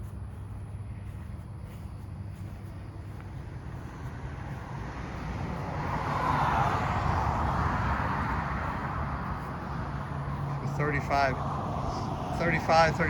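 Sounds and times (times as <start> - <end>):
steady low hum: 0.0 - 6.1
vehicle passing by: 0.0 - 13.0.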